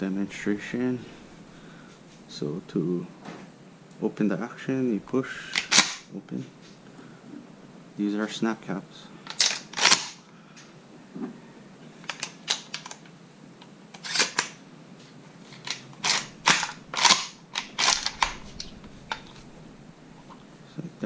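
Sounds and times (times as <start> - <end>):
shotgun loading metallic clicks: 5.6 - 6.0, 9.3 - 10.2, 12.0 - 13.1, 14.0 - 14.6, 15.5 - 19.5.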